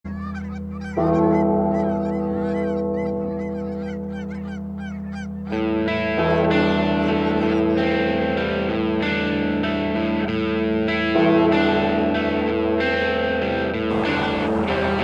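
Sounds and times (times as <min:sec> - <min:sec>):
geese honking: 0:00.1 - 0:09.4, 0:13.9 - 0:15.0
distorted electric guitar music: 0:05.4 - 0:15.0
held electric guitar chord: 0:05.5 - 0:15.0.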